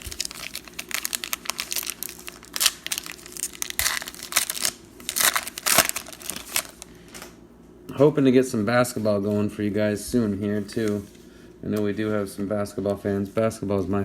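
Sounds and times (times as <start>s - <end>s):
plastic wrappers crinkling: 0.0s - 7.2s, 10.4s - 11.2s.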